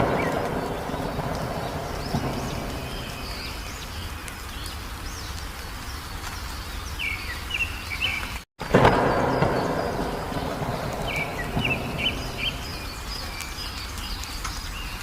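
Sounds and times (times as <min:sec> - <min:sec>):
low background rumble: 0:00.0 - 0:05.3
songbirds chirping: 0:00.0 - 0:15.0.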